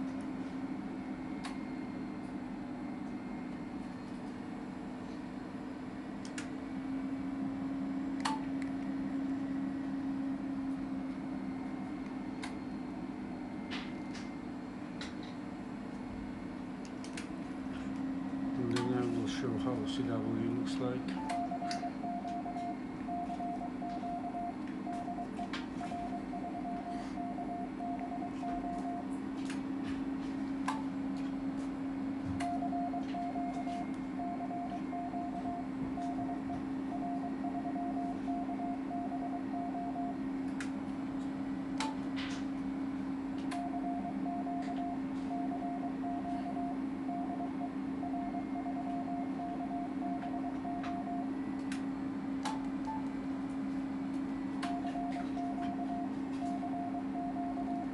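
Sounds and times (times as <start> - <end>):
steady low hum: 0.0 - 57.9
morse code beeps: 21.2 - 29.1, 32.4 - 40.2, 43.6 - 51.3, 54.6 - 57.9.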